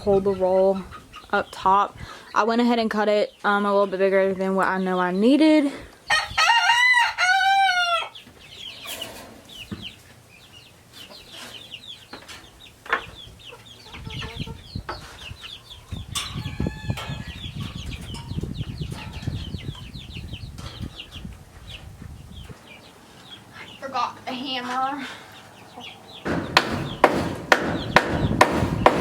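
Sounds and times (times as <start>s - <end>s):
chicks peeping: 0.0s - 29.0s
knocks: 26.2s - 29.0s.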